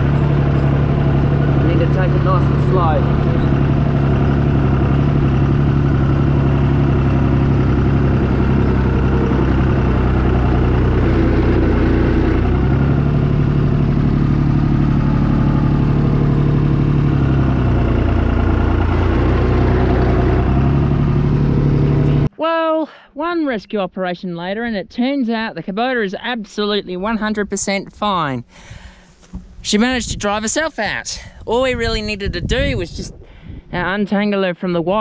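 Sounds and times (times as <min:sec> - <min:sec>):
tractor engine running: 0:00.0 - 0:22.3.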